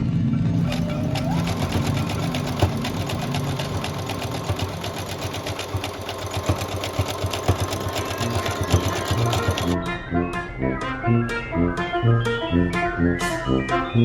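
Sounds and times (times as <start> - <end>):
small machine clattering: 0.5 - 9.8.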